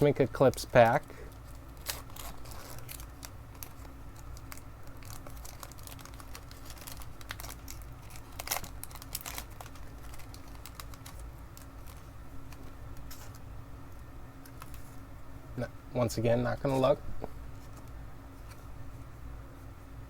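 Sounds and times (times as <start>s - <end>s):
foil wrapper crinkling and tearing: 0.1s - 13.4s.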